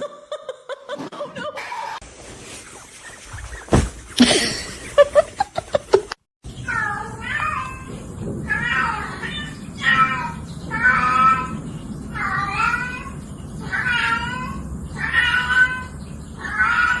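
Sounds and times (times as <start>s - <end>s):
cat meowing: 8.5s - 11.5s, 12.2s - 17.0s.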